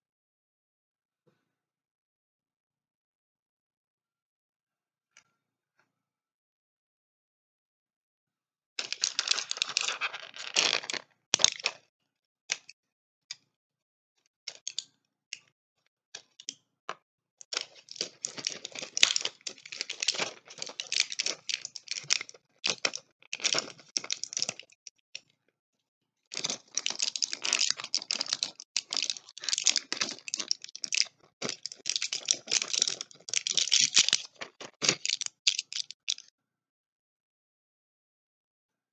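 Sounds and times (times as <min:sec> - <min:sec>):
packaging crinkling and clicking: 0:08.8 - 0:11.8, 0:17.5 - 0:24.8, 0:26.3 - 0:36.3.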